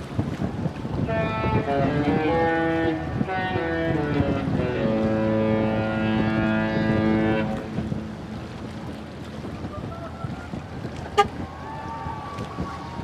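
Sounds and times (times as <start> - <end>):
wind noise: 0.0 - 13.0
ship's musical horn playing: 0.8 - 9.2, 11.0 - 11.4.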